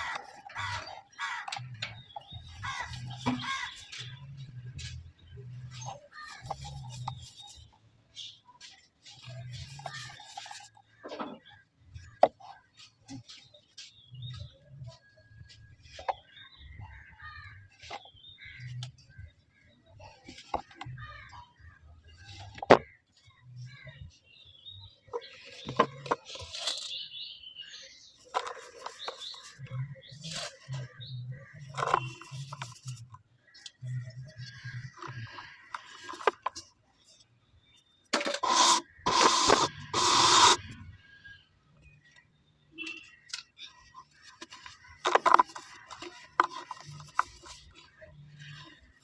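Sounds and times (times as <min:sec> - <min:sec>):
cement balls crushing and scraping: 0:43.6 - 0:49.0.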